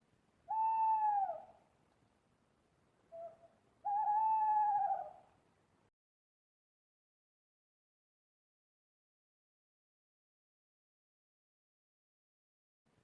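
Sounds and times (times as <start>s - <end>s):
owl hooting: 0.5s - 1.6s, 3.1s - 5.3s.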